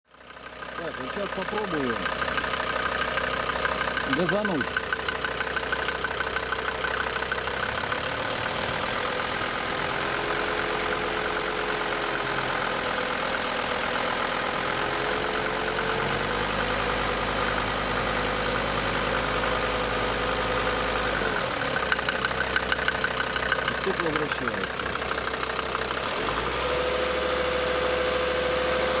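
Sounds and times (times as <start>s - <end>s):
diesel engine running: 0.1s - 29.0s
injectors knocking: 3.6s - 7.4s, 21.8s - 25.3s.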